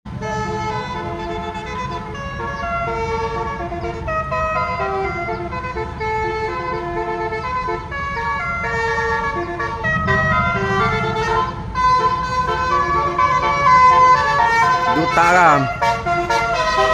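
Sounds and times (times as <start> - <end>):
bus melody horn jingle: 0.1 - 16.9
low rumble: 9.4 - 12.8.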